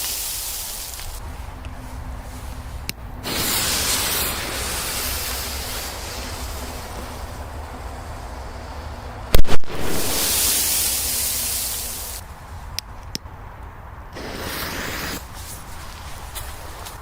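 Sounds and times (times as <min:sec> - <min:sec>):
hiss of burning pyrotechnics: 0:00.0 - 0:12.7, 0:14.2 - 0:17.0
firecracker bangs: 0:03.2 - 0:07.3, 0:09.3 - 0:12.2, 0:14.2 - 0:15.3.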